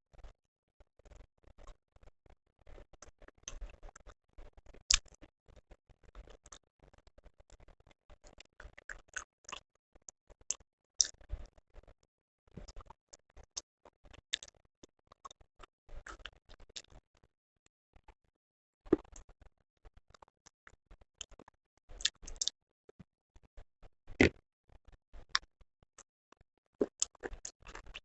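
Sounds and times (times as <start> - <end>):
mouth clicks and smacks: 22.0 - 22.5
person chewing: 26.8 - 28.0.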